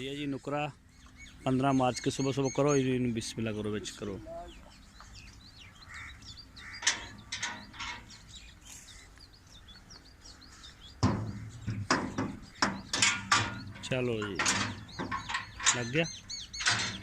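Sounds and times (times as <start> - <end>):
small birds chirping: 0.0 - 17.0
knocks and thuds: 11.0 - 15.8.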